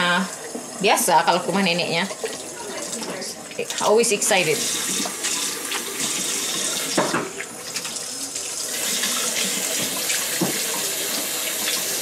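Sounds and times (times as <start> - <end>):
tap water running into sink: 0.0 - 12.0
knock: 9.8 - 10.7.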